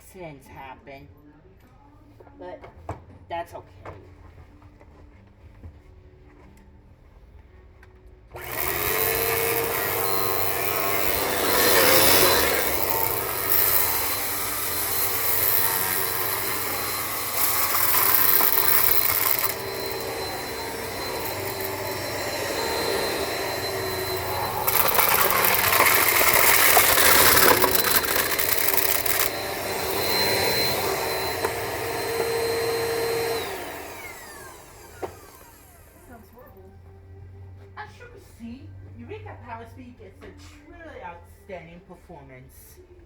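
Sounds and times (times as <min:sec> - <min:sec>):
vacuum cleaner running: 0:08.4 - 0:36.3.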